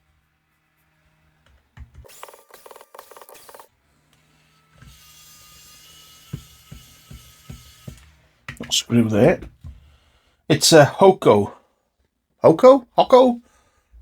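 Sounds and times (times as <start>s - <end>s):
small motor whine: 0.1s - 8.4s.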